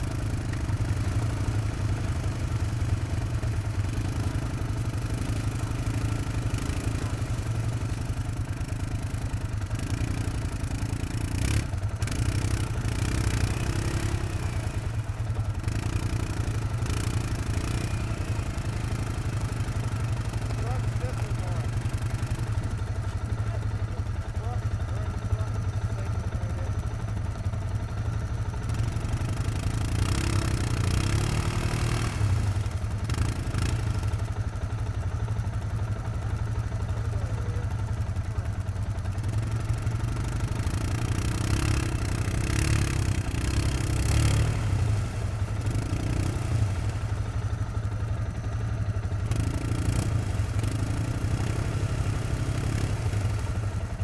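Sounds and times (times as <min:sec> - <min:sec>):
atv engine revving: 0:00.0 - 0:54.0.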